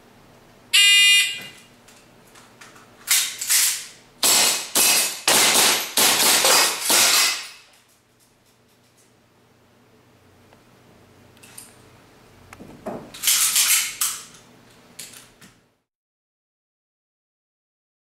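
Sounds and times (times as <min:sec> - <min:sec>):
shot timer beep: 0:00.8 - 0:01.5
airsoft pistol shots: 0:04.2 - 0:07.6.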